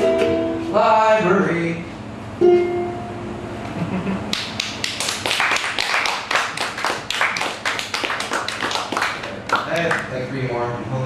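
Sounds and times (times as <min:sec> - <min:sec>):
audience clapping: 0:04.3 - 0:10.2.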